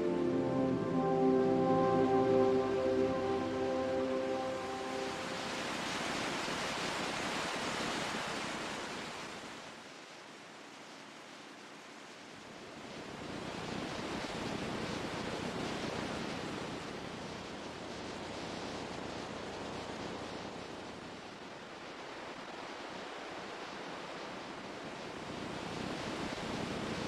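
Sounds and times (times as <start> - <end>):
ocean waves washing in: 0.0 - 9.7.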